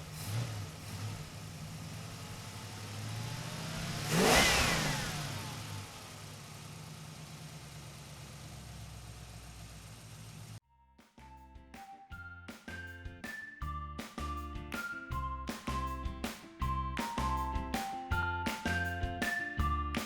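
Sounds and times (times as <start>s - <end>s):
car engine humming: 0.0s - 10.6s
vehicle passing close by: 2.6s - 6.3s.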